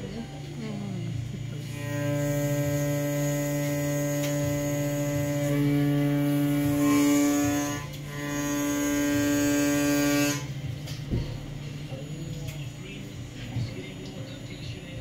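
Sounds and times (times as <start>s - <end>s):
milling machine motor whine: 0.0s - 11.0s.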